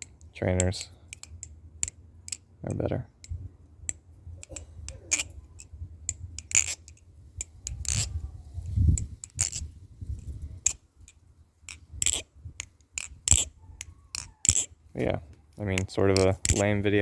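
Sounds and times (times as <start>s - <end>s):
butterfly knife metal clicks: 1.1s - 8.2s, 10.2s - 14.7s, 15.8s - 16.7s.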